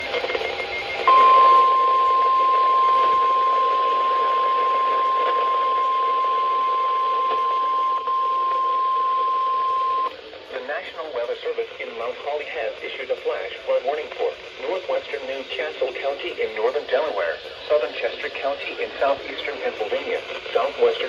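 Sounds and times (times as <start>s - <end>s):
radio static: 0.0s - 21.0s
steady alarm tone: 0.6s - 10.1s.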